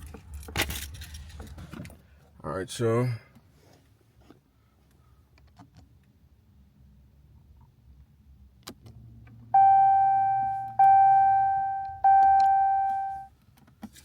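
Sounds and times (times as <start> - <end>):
car warning chime dinging: 9.6 - 13.3.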